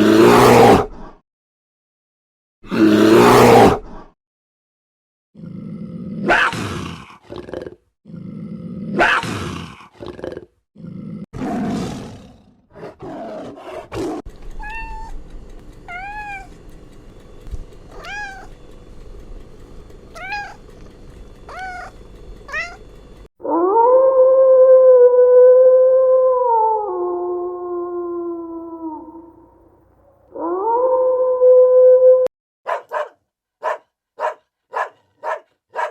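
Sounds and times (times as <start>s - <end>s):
deep rough animal roars: 0.0s - 1.2s, 2.7s - 4.1s, 5.4s - 14.4s
cat meowing: 14.5s - 15.2s, 15.8s - 16.6s, 17.9s - 18.6s, 20.2s - 20.6s, 21.5s - 22.9s
long wavering howl: 23.4s - 29.7s, 30.3s - 32.3s.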